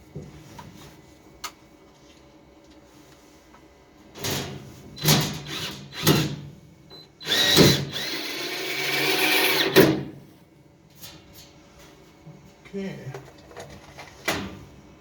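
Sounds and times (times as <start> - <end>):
power drill running: 5.4 - 6.2, 7.2 - 10.0.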